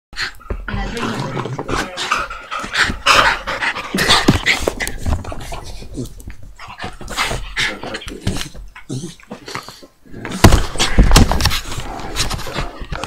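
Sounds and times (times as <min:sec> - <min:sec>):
dog panting: 0:01.8 - 0:09.9.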